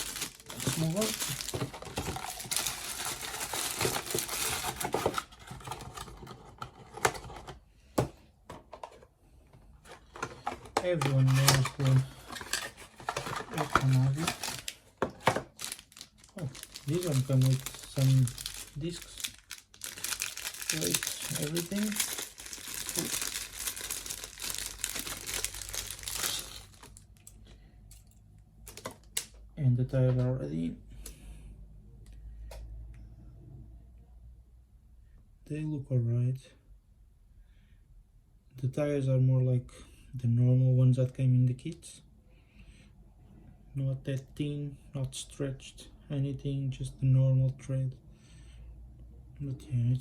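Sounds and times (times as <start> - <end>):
packaging crinkling: 0.0 - 7.3, 10.0 - 27.2.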